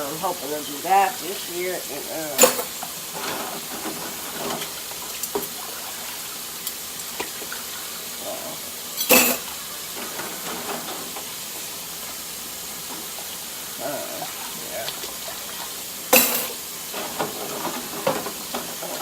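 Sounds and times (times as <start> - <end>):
tap water running into sink: 0.0 - 19.0
dishes clattering: 2.4 - 5.7, 8.9 - 11.5, 14.3 - 19.0.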